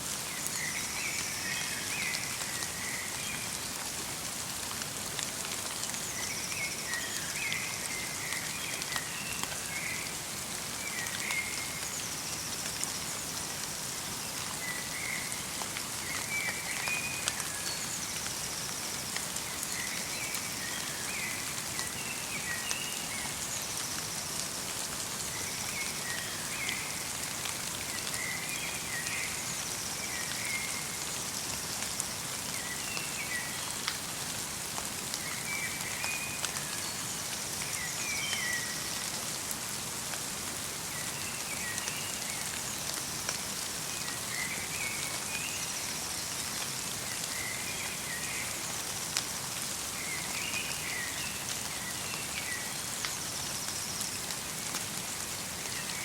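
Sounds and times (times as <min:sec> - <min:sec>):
light rain falling: 0:00.0 - 0:56.0.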